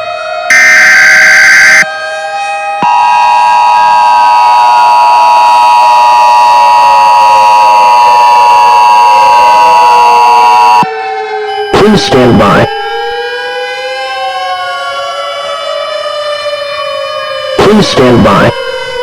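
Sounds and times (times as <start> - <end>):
data header burst: 0.5 - 1.8
steady two-tone attention signal: 0.5 - 1.8.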